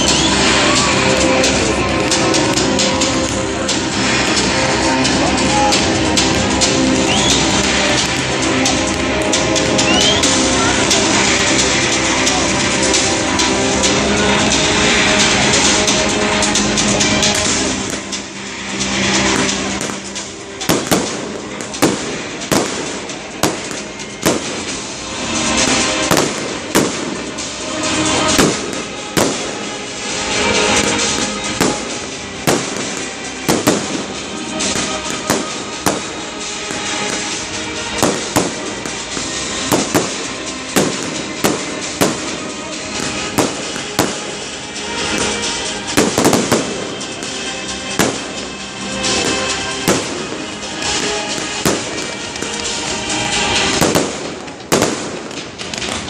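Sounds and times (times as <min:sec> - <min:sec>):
fireworks crackling and hissing: 0:00.0 - 0:56.0
firework shells bursting: 0:19.3 - 0:56.0.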